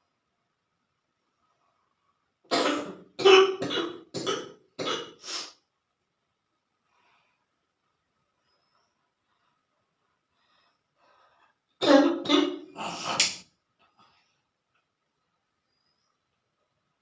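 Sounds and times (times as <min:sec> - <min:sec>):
person coughing: 0:02.5 - 0:05.2, 0:11.8 - 0:13.3.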